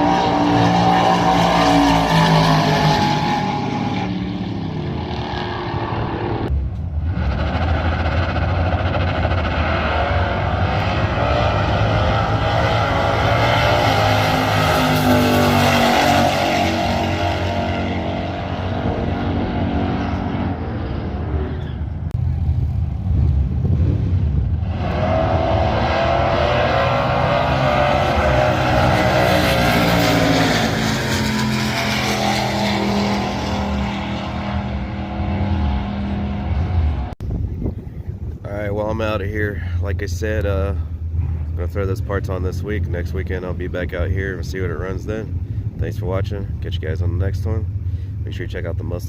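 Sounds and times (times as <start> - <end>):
car engines revving: 0.0 - 38.4.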